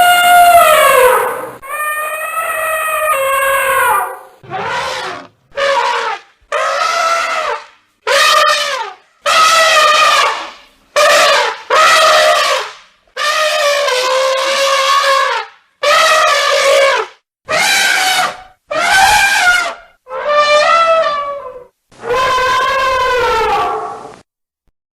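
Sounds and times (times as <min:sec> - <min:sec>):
elephant trumpeting: 0:00.0 - 0:24.2.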